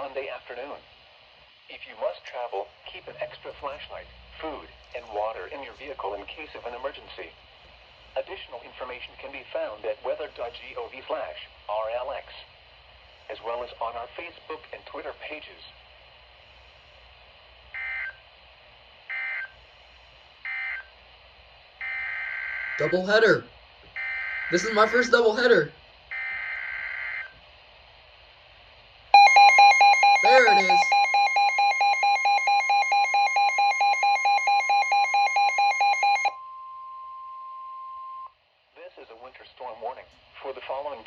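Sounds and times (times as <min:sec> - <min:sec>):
rapidly pulsing alarm beep: 0:21.8 - 0:23.1, 0:24.0 - 0:25.1, 0:29.2 - 0:38.3
steady warning tone: 0:21.8 - 0:25.5, 0:29.2 - 0:38.3.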